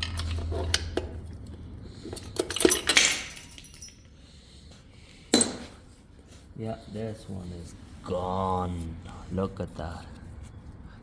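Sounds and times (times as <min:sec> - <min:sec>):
metal tools clinking and clanking: 0:00.0 - 0:04.2, 0:05.3 - 0:05.8.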